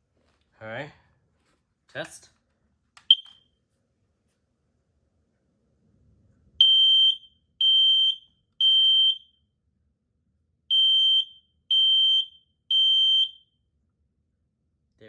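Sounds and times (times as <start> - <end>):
smoke alarm beeping: 3.0 - 3.5, 6.6 - 9.4, 10.7 - 13.6.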